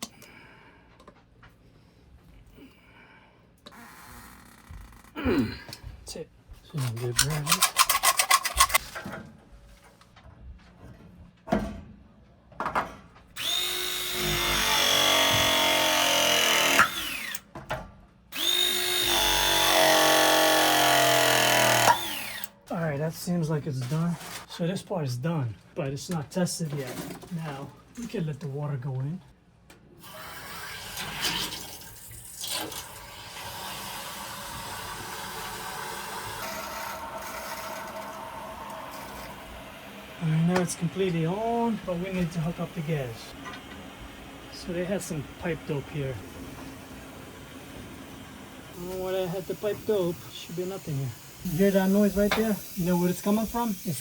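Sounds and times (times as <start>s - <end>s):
pressing tool motor whine: 13.4s - 17.4s, 18.4s - 22.5s, 33.0s - 54.0s.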